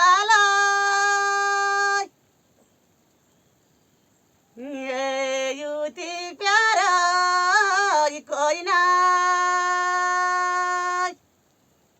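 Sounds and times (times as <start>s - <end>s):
high voice singing: 0.0s - 2.1s, 4.6s - 11.2s.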